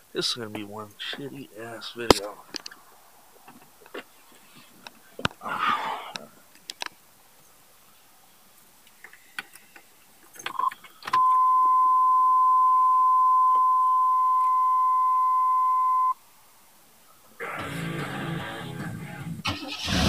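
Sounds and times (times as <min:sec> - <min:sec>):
steady electronic beep: 0:11.2 - 0:16.2.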